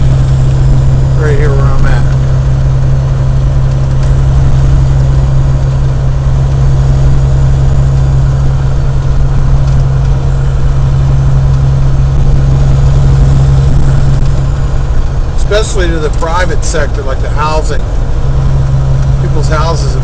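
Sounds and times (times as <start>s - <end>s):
road noise: 0.0s - 20.0s
truck engine droning: 0.0s - 20.0s.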